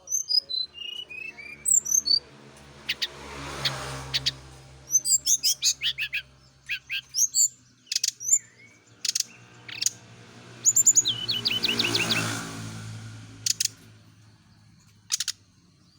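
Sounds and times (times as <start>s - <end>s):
bird chirps and whistled calls: 0.0s - 2.2s, 2.9s - 10.0s, 10.6s - 12.5s, 13.4s - 13.8s, 14.8s - 15.5s.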